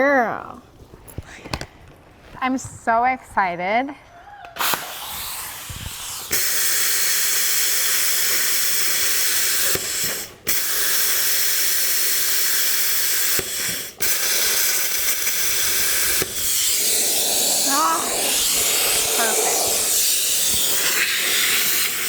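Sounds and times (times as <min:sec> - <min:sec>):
compressed air hissing from air tool: 0:04.6 - 0:22.0.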